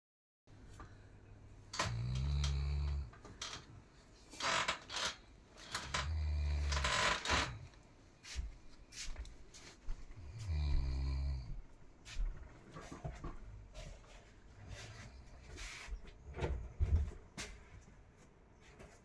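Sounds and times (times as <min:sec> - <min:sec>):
person snoring: 0:01.8 - 0:03.1, 0:05.7 - 0:07.7, 0:10.2 - 0:11.6
noisy breath: 0:09.0 - 0:12.2.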